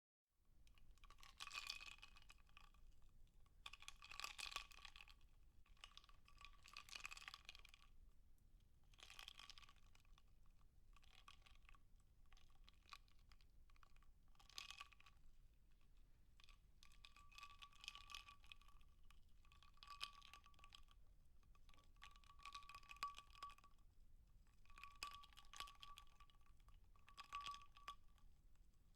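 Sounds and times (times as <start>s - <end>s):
ice crackling and clinking in glass: 27.0s - 28.1s.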